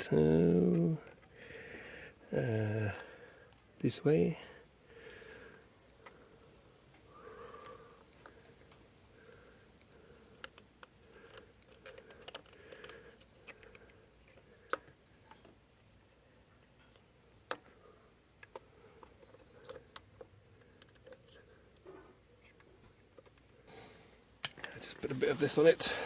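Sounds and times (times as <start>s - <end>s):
tools and parts clicking: 9.8s - 15.6s, 18.4s - 21.8s.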